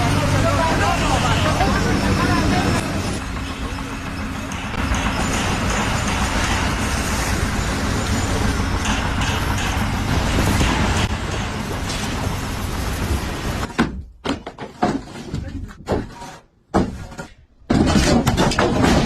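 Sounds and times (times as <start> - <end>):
large engine running: 0.0 - 13.7.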